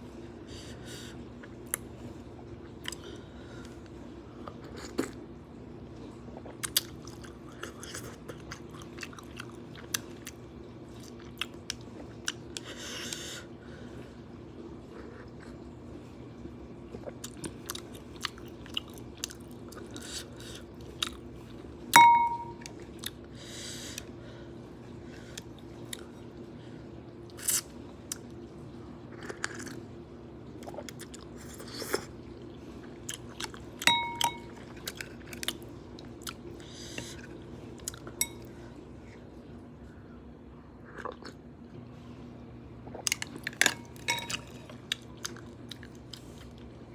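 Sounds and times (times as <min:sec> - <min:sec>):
steady low hum: 0:00.0 - 0:46.9
chewing and crunching food: 0:01.4 - 0:05.3, 0:06.0 - 0:14.1, 0:16.8 - 0:21.7, 0:25.0 - 0:26.4, 0:27.3 - 0:38.6, 0:40.7 - 0:41.8, 0:42.8 - 0:46.8
utensil clinking against bowl: 0:22.0 - 0:22.7, 0:33.8 - 0:34.6, 0:38.2 - 0:38.5, 0:43.1 - 0:44.7.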